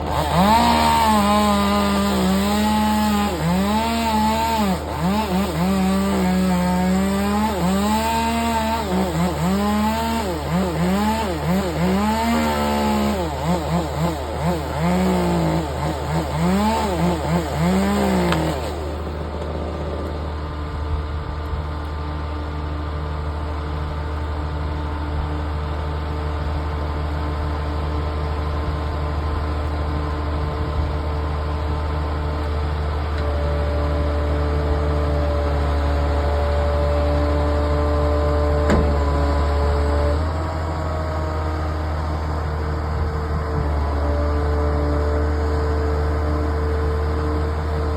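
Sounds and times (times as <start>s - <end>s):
chainsaw revving: 0.0s - 22.2s, 33.0s - 42.7s
low engine hum: 0.0s - 47.9s.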